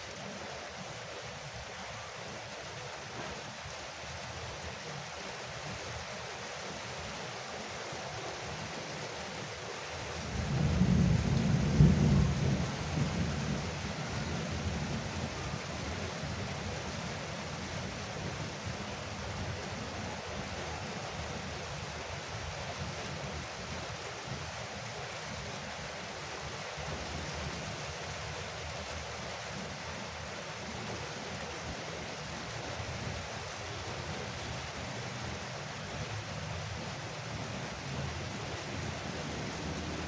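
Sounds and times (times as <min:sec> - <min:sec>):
heavy rain drumming on a roof: 0:00.0 - 0:40.0.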